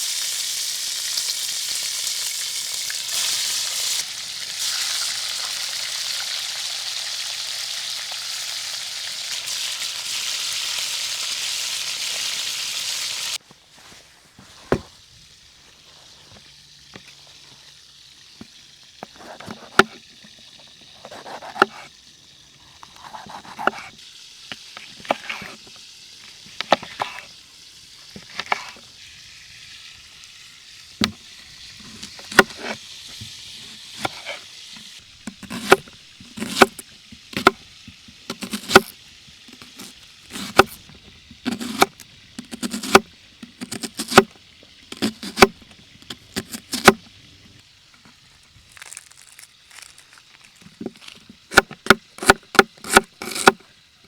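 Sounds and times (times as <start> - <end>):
food sizzling in a frying pan: 0.0 - 13.4, 23.9 - 41.3
utensil scraping a pan: 24.8 - 25.7, 33.5 - 34.4.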